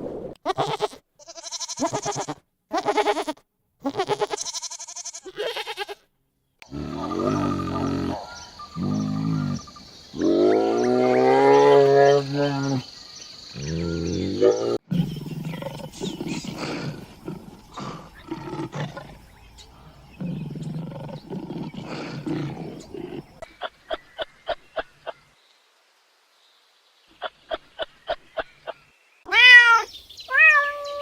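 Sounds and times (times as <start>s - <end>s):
low rough growling calls: 6.6s - 23.5s
drawn-out animal calls: 13.6s - 23.4s.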